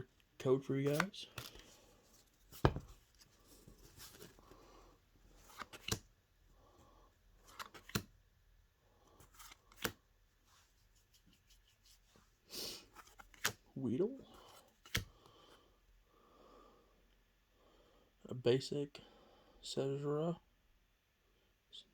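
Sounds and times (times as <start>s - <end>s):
cards snapping: 5.4s - 6.0s, 7.5s - 8.1s, 13.2s - 13.6s, 14.8s - 15.1s.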